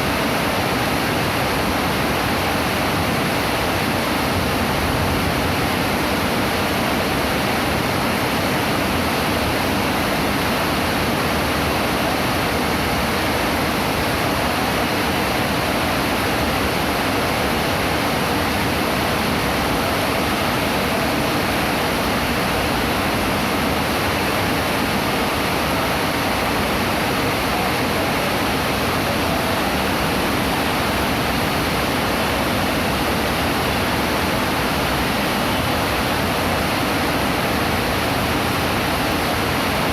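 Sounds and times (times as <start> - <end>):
heavy rain hissing: 0.0 - 39.9.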